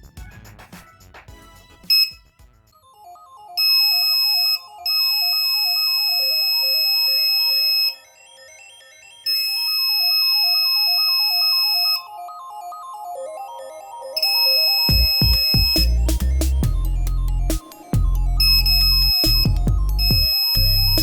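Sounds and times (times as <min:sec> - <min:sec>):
electronic background music: 0:00.0 - 0:21.0
high-pitched alarm buzzer: 0:03.6 - 0:08.1, 0:09.2 - 0:12.2.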